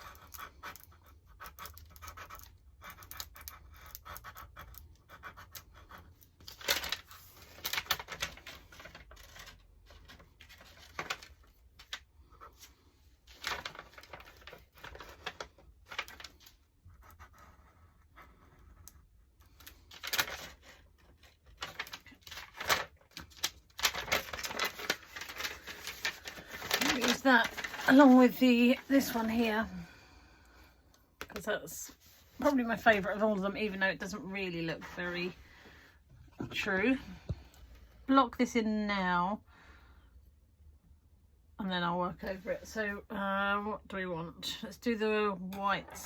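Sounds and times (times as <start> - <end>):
paper rubbing and rustling: 6.4 - 18.8, 19.6 - 29.5.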